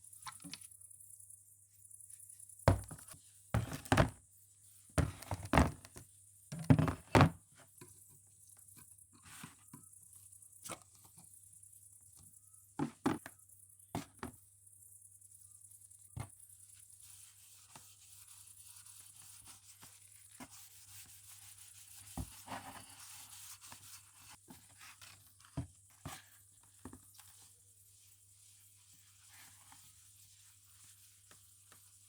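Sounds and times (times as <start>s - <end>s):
hard objects knocking: 2.7s - 4.2s.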